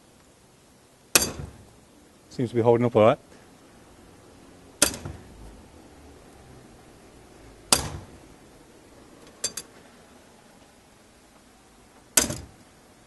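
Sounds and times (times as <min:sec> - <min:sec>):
hammer striking metal lock: 0:01.2 - 0:01.6, 0:04.8 - 0:05.2, 0:07.7 - 0:08.1, 0:09.4 - 0:09.7, 0:12.2 - 0:12.6.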